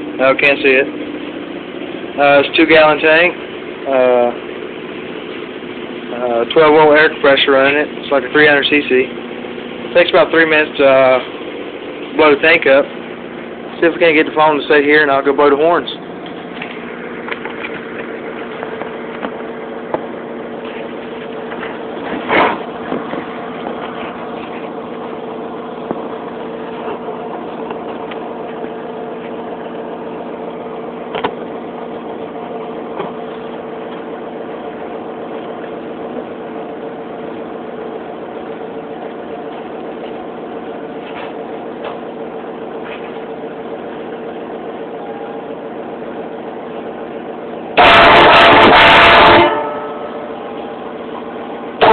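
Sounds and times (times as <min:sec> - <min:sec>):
loud thump: 0:22.1 - 0:23.3.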